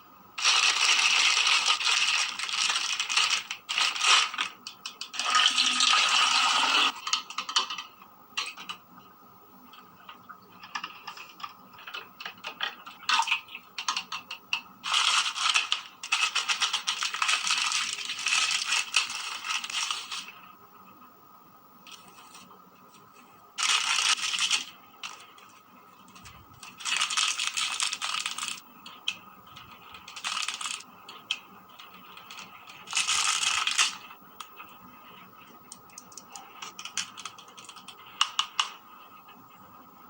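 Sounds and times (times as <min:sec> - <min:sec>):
plastic toy pieces rattling: 0:00.4 - 0:04.6, 0:14.8 - 0:20.3, 0:23.6 - 0:25.3, 0:26.6 - 0:34.1.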